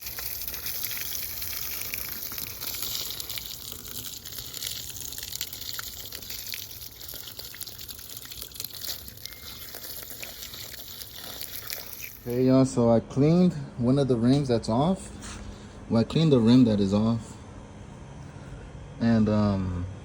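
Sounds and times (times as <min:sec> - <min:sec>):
small ticks and drips: 0:00.0 - 0:12.3
water spraying and splashing: 0:00.0 - 0:12.4.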